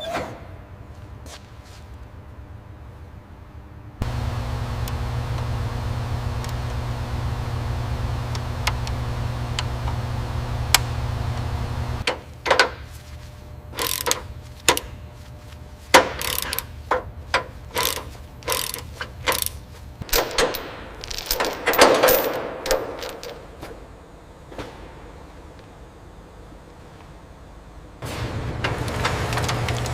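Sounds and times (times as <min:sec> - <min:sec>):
low machine hum: 0:02.1 - 0:29.9
sharp mechanical clicks and knocks: 0:13.7 - 0:14.9, 0:15.9 - 0:23.4.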